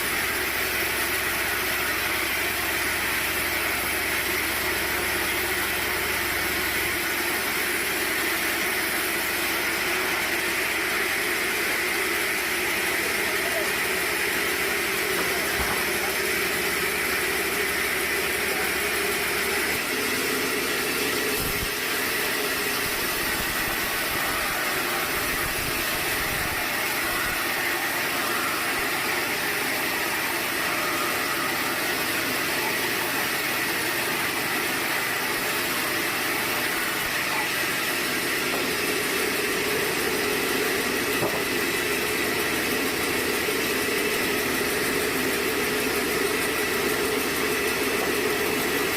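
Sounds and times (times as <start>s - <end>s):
sawmill machinery drone: 0.0s - 48.9s.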